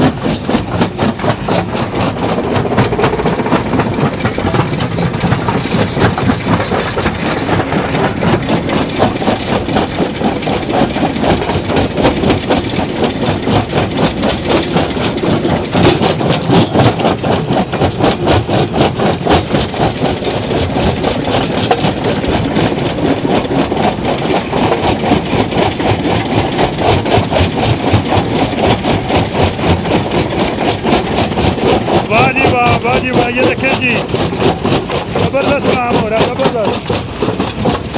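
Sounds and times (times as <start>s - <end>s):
stone crusher clattering: 0.0s - 37.9s.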